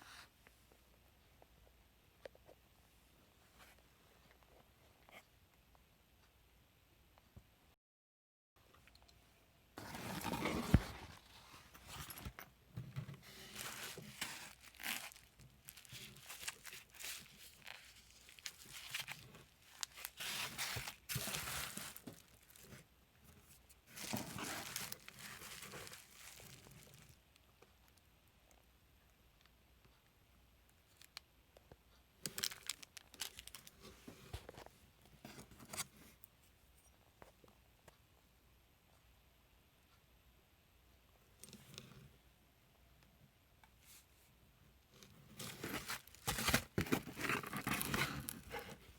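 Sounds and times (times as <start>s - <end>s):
packaging tearing and crinkling: 13.4s - 22.7s, 23.9s - 27.0s, 32.3s - 33.7s, 45.4s - 48.7s.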